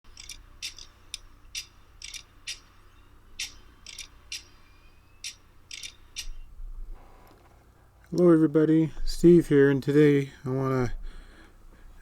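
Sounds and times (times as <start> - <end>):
high-pitched metallic clicks: 0.1 - 4.6, 5.2 - 6.4.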